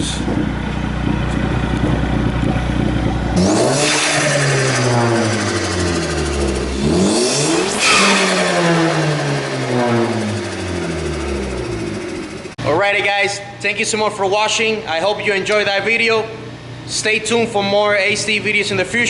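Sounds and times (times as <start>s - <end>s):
car engine idling and revving: 0.0s - 12.6s.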